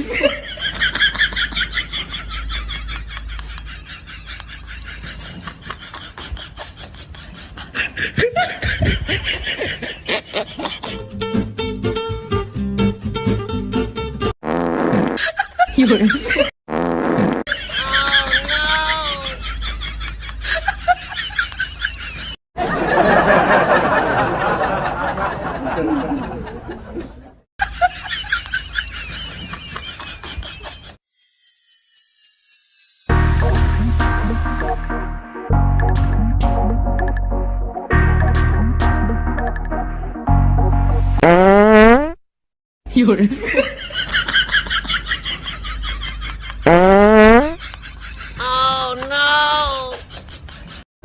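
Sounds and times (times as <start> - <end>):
snickering laughter: 0.0 - 11.1, 17.4 - 31.0, 49.7 - 50.8.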